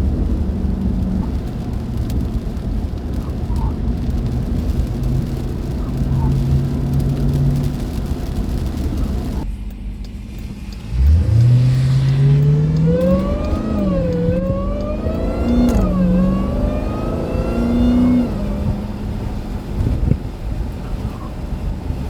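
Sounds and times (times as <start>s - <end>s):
car engine accelerating hard: 0.0s - 22.0s
supercharger whine: 9.0s - 20.1s.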